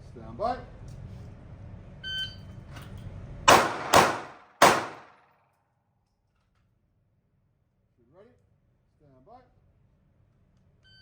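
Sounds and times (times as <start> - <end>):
handgun shots: 3.5 - 5.2.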